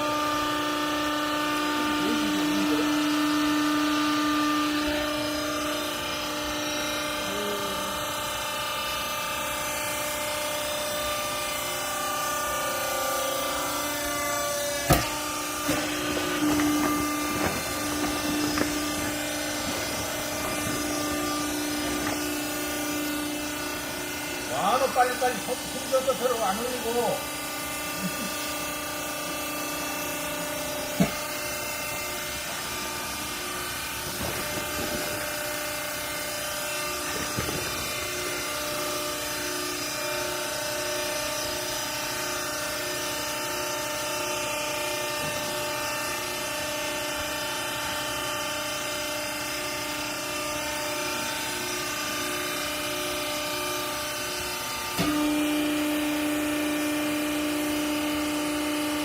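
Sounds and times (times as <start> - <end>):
hydraulic pump motor humming: 0.0 - 59.0.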